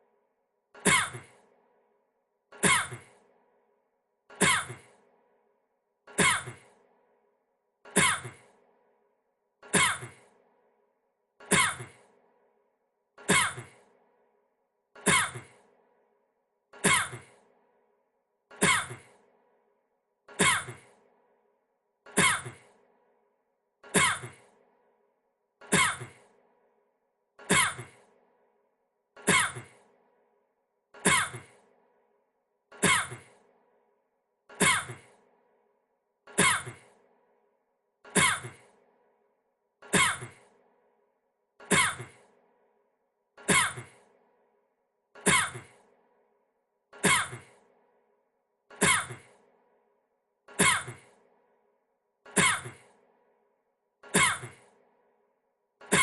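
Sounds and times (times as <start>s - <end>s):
man coughing: 20.4s - 20.8s, 47.0s - 47.5s, 52.4s - 52.8s.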